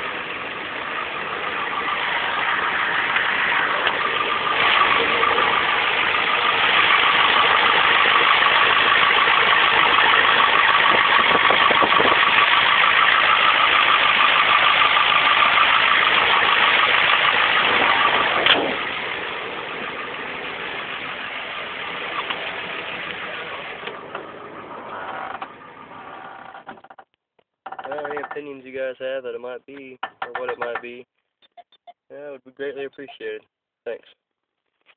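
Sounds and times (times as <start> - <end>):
diesel engine idling: 0.0 - 26.8, 27.9 - 31.0
rhythmic engine noise: 27.7 - 31.9.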